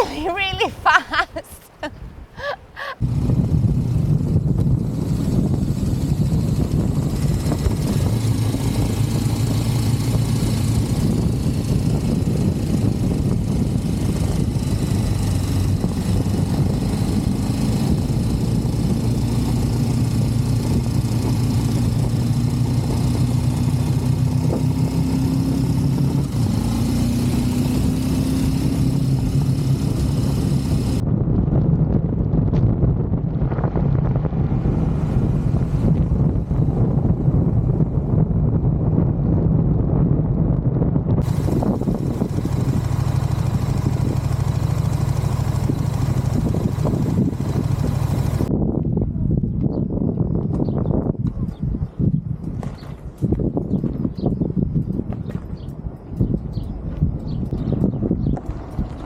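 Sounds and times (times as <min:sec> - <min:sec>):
wind noise: 0:00.0 - 0:59.0
motorcycle engine running: 0:03.1 - 0:31.0, 0:41.2 - 0:48.5.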